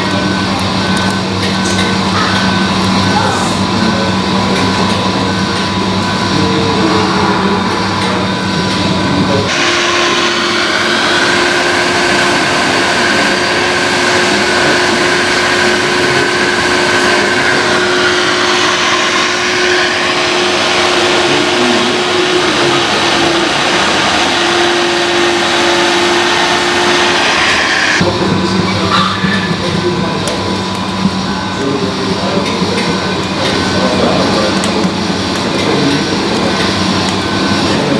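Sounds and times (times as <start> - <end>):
electric motor whine: 0.0 - 28.1.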